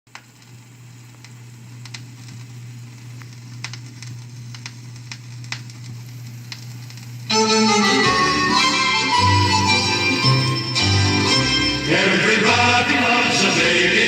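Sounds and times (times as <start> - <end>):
vinyl record crackle and pops: 0.1 - 7.3
steady low hum: 9.8 - 14.0.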